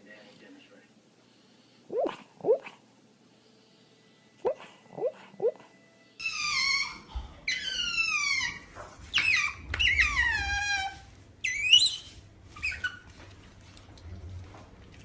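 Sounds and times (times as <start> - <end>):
animal squealing calls: 1.9 - 2.7, 6.2 - 13.1.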